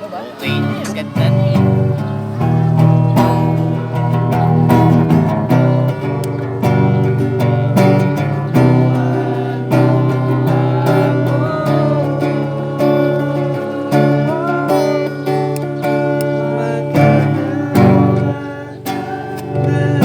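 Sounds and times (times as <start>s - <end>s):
person singing: 0.0s - 20.0s
strummed acoustic guitar: 0.0s - 20.0s.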